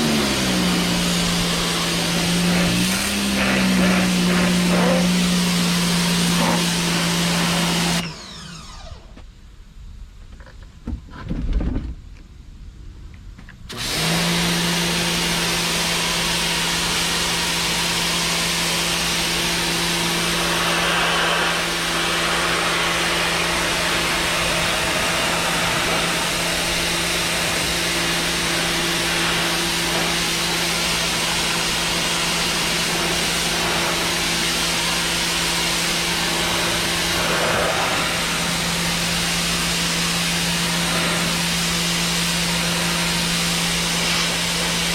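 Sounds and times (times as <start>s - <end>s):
high-pressure water spray hiss: 0.0s - 8.0s, 14.0s - 44.9s
pressure washer motor hum: 0.0s - 9.2s, 13.7s - 44.9s.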